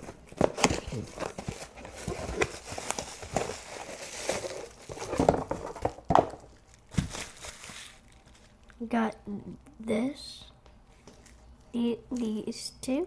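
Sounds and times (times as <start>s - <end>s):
packaging crinkling and tearing: 0.0s - 8.8s.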